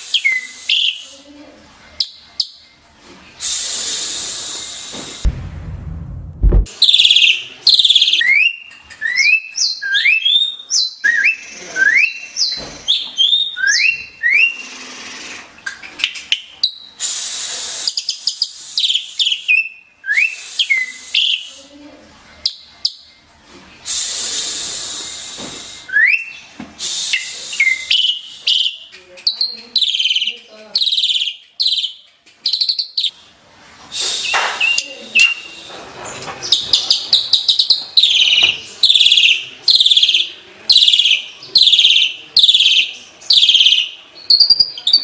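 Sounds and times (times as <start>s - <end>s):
starling singing: 6.8s - 15.0s, 27.2s - 33.1s, 36.4s - 45.0s.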